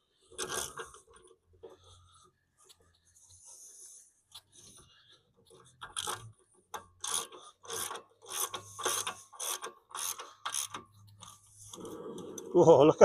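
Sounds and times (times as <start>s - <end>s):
ratchet wrench clicking: 5.8s - 6.3s, 7.0s - 11.4s.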